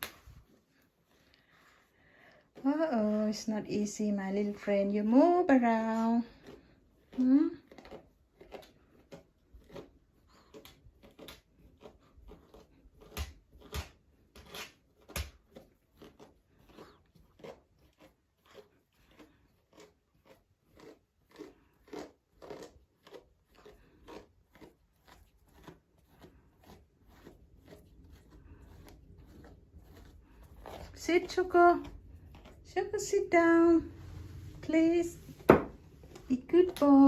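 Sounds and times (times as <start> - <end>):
brush scratching through fur: 0.0 - 13.8, 23.0 - 37.0.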